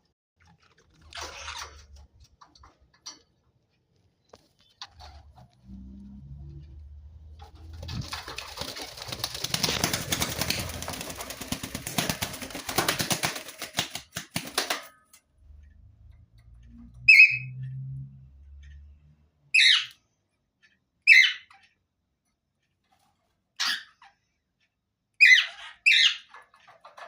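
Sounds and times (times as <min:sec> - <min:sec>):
bird wings flapping: 0:07.4 - 0:15.0.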